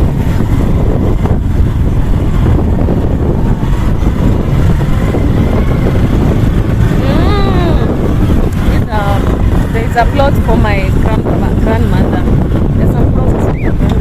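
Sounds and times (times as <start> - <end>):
vehicle road rumble: 0.0 - 14.0
wind buffeting microphone: 0.0 - 14.0.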